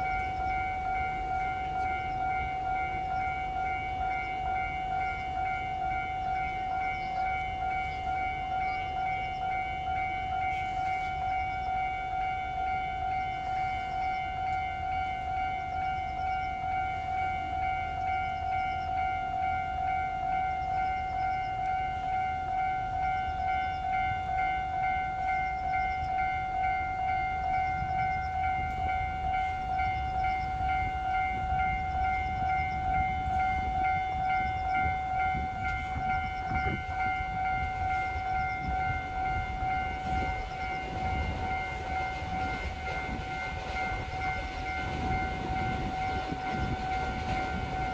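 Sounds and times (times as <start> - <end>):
freight train rumbling: 0.0 - 47.9
train knocks: 22.6 - 47.9.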